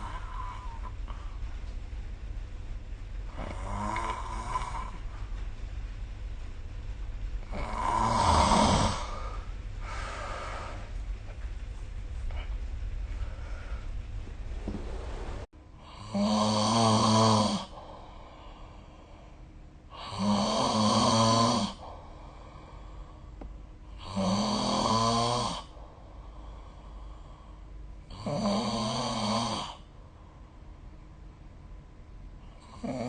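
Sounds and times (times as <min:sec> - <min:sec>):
quiet breathing: 0:00.0 - 0:01.8, 0:03.2 - 0:05.5, 0:07.4 - 0:31.6
person snoring: 0:03.3 - 0:05.1, 0:07.4 - 0:10.9, 0:15.8 - 0:19.0, 0:19.9 - 0:22.8, 0:23.9 - 0:25.8, 0:28.1 - 0:29.9, 0:32.5 - 0:33.0.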